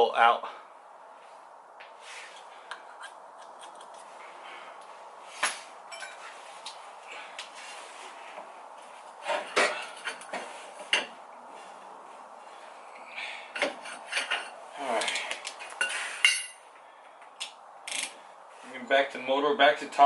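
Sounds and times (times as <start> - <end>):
metal tools clinking and knocking: 5.9 - 6.3, 13.6 - 15.2, 15.8 - 16.6.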